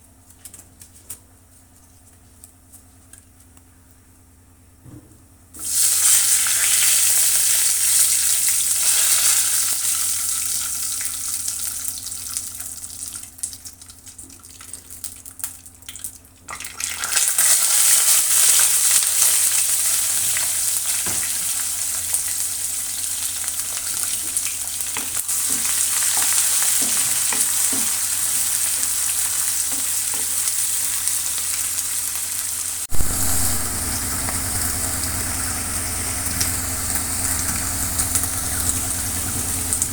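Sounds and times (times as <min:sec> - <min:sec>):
brief knock: 0:04.8 - 0:05.2
food sizzling in hot oil: 0:05.6 - 0:13.5, 0:16.6 - 0:39.9
steady low hum: 0:32.8 - 0:39.9.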